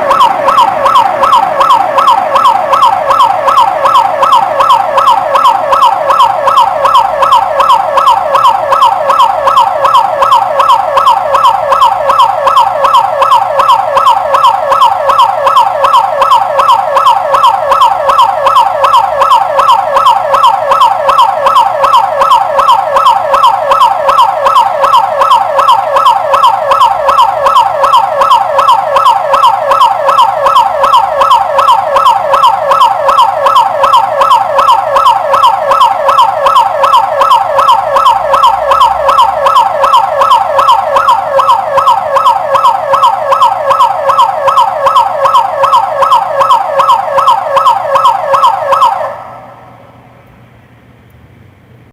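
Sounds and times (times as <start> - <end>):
intruder alarm siren wailing: 0.0 - 49.8.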